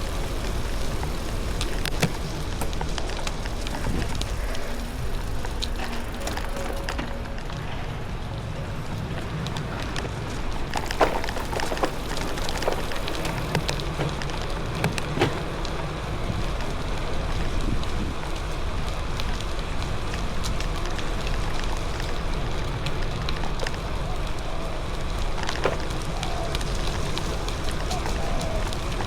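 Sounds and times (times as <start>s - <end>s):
low rumble: 0.0s - 15.1s
rain hiss: 0.0s - 29.0s.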